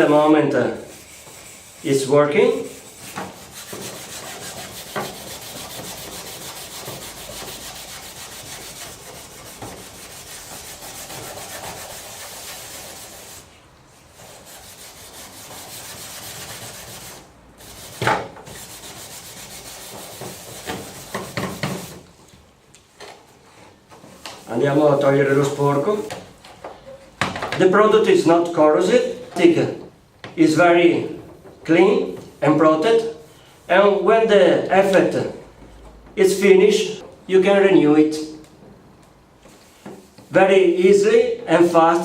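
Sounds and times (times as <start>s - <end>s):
sponge scrubbing plastic: 0.9s - 13.5s, 14.1s - 22.0s.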